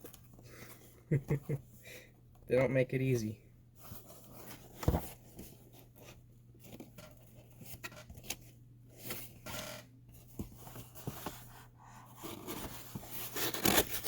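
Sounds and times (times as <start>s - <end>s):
cardboard box being opened: 10.2s - 14.0s.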